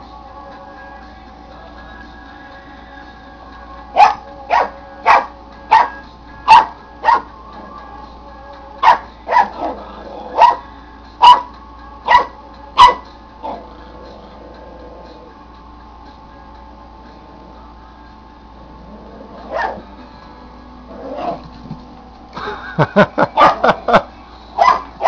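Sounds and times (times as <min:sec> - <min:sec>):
puppy barking: 0:04.0 - 0:07.3, 0:08.8 - 0:09.8, 0:10.4 - 0:11.5, 0:12.1 - 0:13.6, 0:19.5 - 0:19.9, 0:23.4 - 0:23.8, 0:24.6 - 0:25.0.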